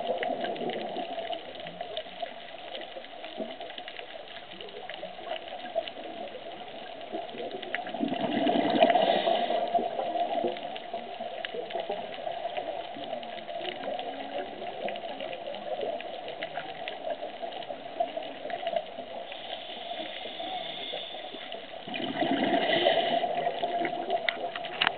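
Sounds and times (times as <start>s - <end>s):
clicks and crackles: 0.0s - 24.9s
regulator bubbles gushing: 0.0s - 24.9s
distant whale song: 19.2s - 21.9s.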